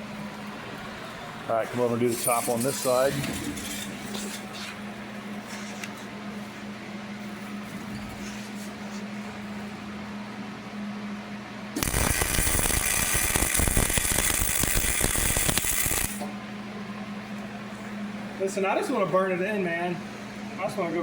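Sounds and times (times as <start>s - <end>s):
welding arc crackling: 11.8s - 16.2s.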